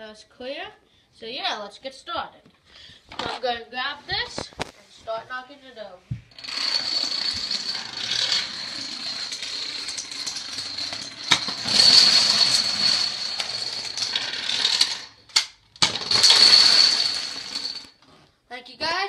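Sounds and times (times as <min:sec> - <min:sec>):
dominoes toppling: 0:06.3 - 0:18.0.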